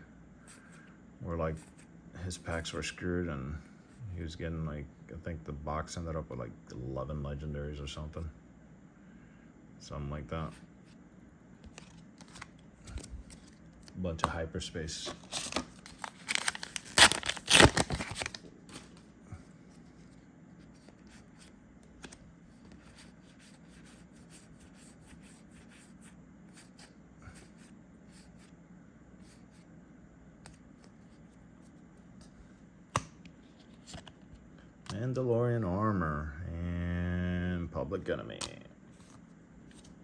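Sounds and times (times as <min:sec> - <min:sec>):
wrapper ripping and crackling: 0:15.2 - 0:19.0
cards clicking: 0:32.9 - 0:34.2.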